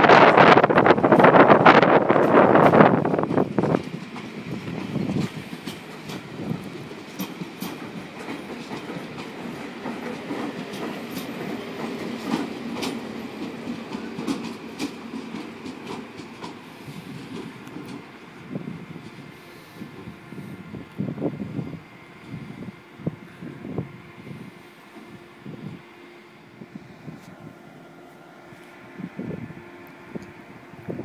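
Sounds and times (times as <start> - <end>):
train rumbling on tracks: 0.0 - 31.0
wheels clicking over rail joints: 0.3 - 18.2.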